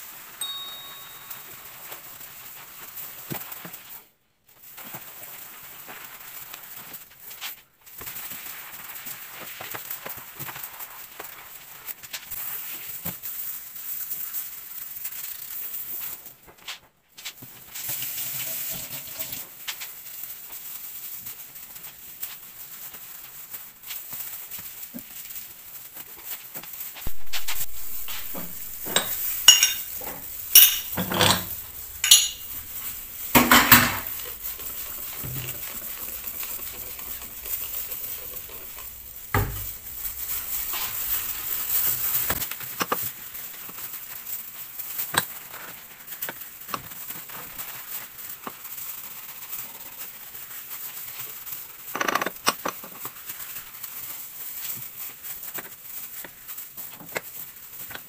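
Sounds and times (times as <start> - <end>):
frying sizzle: 0.0 - 58.0
dishes and utensils clattering: 18.1 - 19.4, 27.1 - 42.4.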